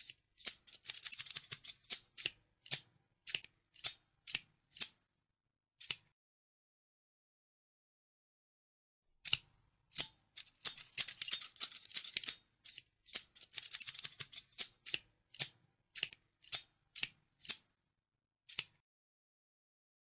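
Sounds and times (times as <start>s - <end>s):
scissors snipping: 0.0s - 5.0s, 5.8s - 6.1s, 9.2s - 17.7s, 18.5s - 18.8s.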